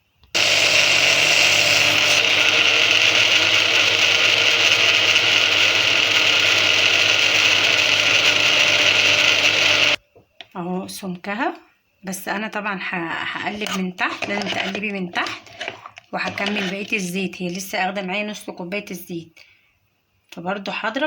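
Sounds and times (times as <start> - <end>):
electric blender running: 0.4 - 10.0.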